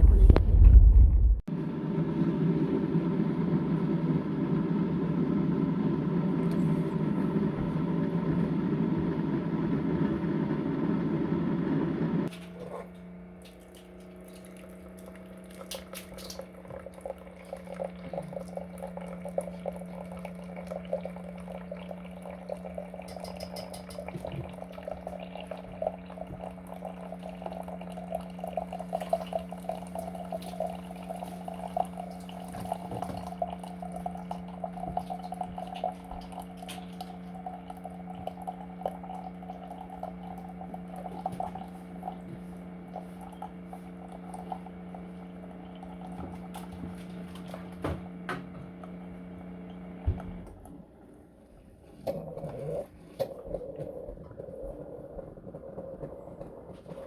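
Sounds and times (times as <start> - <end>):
car cabin road noise: 0.0 - 1.5
steady low hum: 0.0 - 23.0
tap water running into sink: 13.4 - 43.2.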